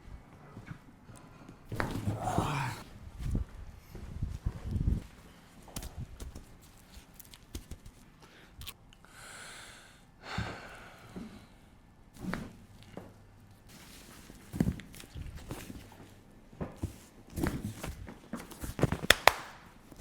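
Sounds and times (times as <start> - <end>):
person breathing and sighing: 1.8 - 2.9, 8.2 - 11.6.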